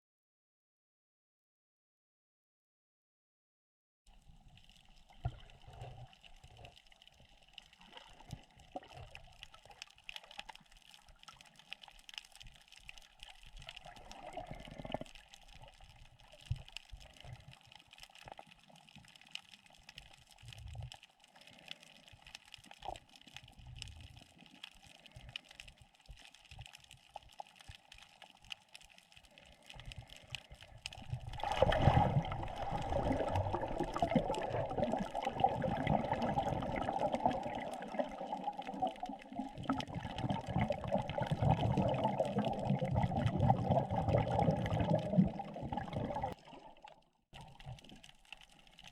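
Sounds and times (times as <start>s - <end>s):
underwater crackle of clicks: 4.2s - 48.9s
water rushing and gurgling: 31.2s - 46.9s.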